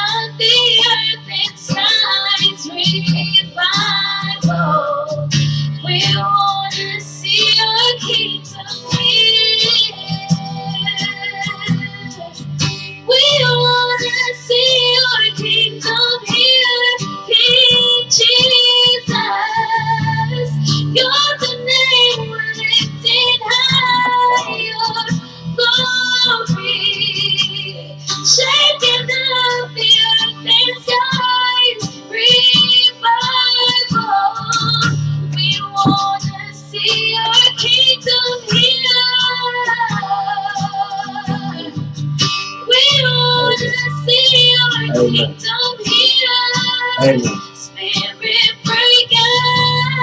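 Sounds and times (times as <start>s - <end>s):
guitar: 0.0s - 50.0s
person singing: 13.1s - 41.8s, 42.7s - 50.0s.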